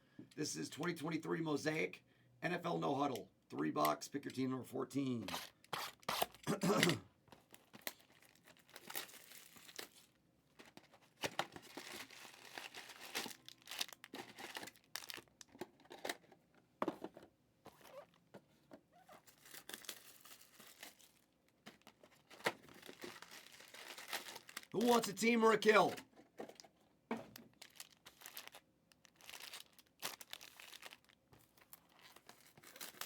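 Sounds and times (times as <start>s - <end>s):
plastic packs crinkling and tearing: 7.5s - 10.2s, 11.5s - 15.5s, 19.2s - 25.2s, 27.4s - 33.0s.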